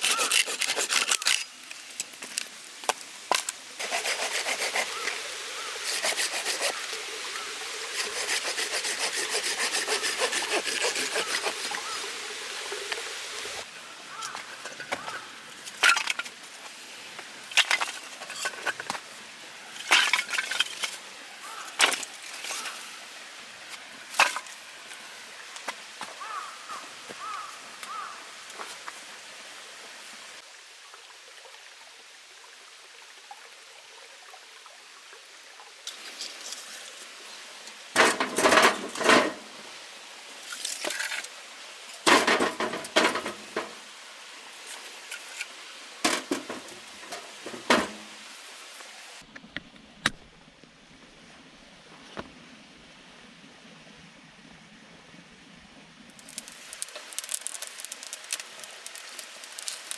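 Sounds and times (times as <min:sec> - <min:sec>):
hand saw cutting firewood: 0:00.0 - 0:02.4, 0:03.3 - 0:07.0, 0:07.7 - 0:12.2, 0:56.1 - 0:59.9
sharp wooden knocks and cracks: 0:56.1 - 0:59.9.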